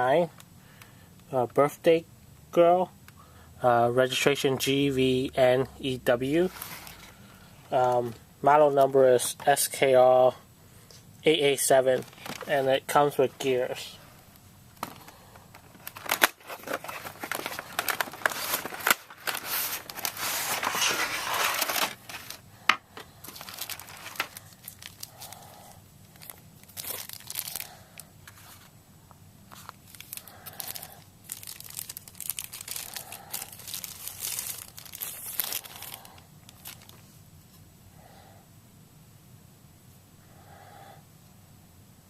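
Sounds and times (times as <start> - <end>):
plastic packaging crinkling: 11.6 - 14.0, 14.8 - 22.4, 23.0 - 28.7, 29.5 - 37.1.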